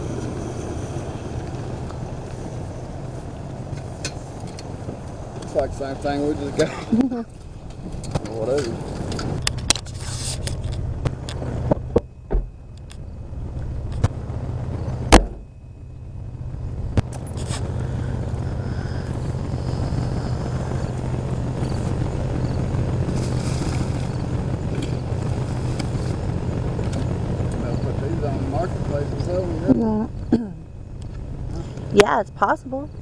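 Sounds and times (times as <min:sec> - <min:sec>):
truck engine running: 0:00.0 - 0:33.0
loud thump: 0:11.0 - 0:12.6, 0:15.1 - 0:15.5.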